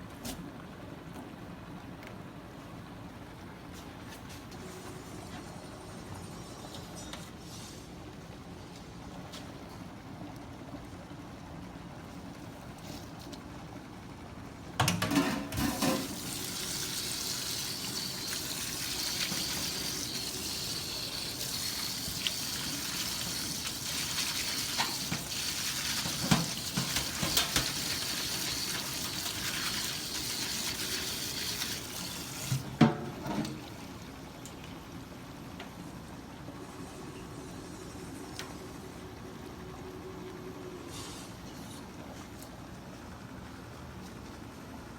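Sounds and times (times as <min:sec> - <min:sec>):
water running: 0:15.2 - 0:34.1.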